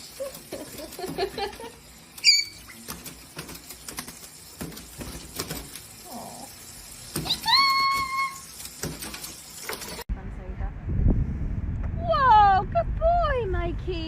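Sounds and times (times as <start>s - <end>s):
animal squeak: 2.2s - 2.8s.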